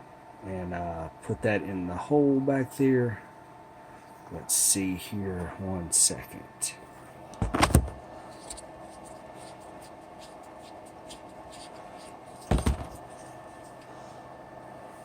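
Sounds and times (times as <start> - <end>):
faint steady hum: 0.0 - 15.0
small clicks and scrapes: 8.3 - 13.9.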